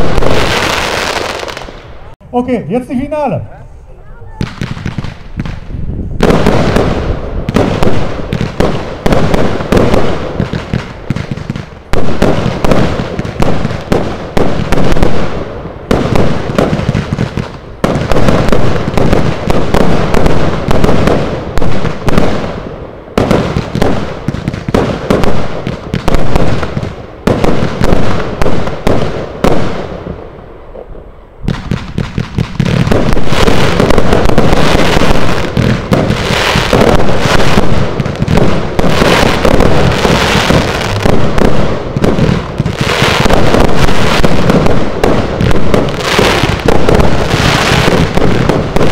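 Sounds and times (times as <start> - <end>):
fireworks volleys bursting: 0.0 - 48.9.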